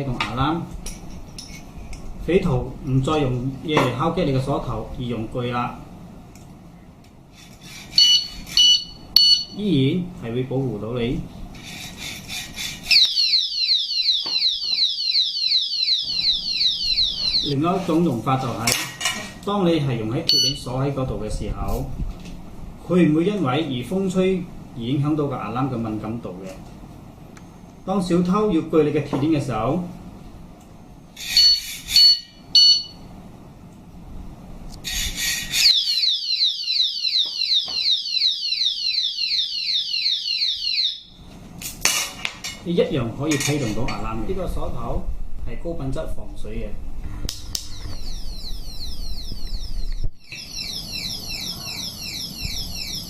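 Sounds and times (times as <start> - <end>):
saw rasping on lock: 7.3 - 8.8, 11.6 - 13.1, 31.2 - 32.3, 34.8 - 35.8
alarm siren falling whoops: 13.0 - 17.6, 35.7 - 41.2, 47.7 - 53.0.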